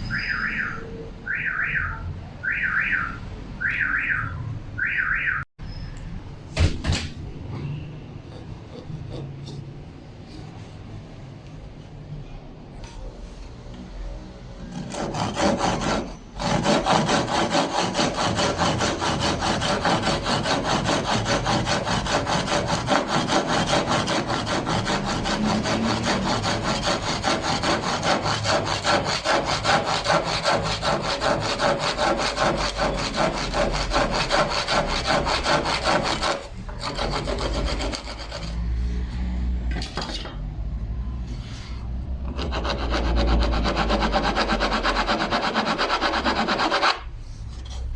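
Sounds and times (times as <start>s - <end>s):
handsaw cutting wood: 14.7s - 38.8s, 42.3s - 47.1s.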